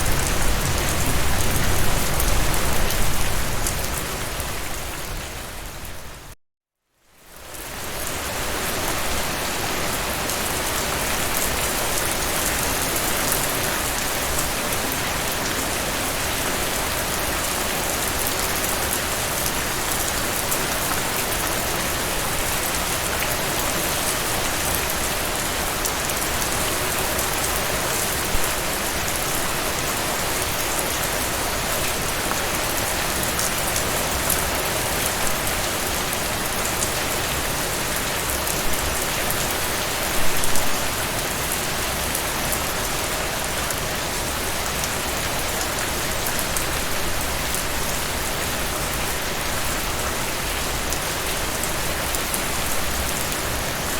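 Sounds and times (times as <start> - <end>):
heavy rainfall: 0.0 - 6.4, 7.1 - 53.9.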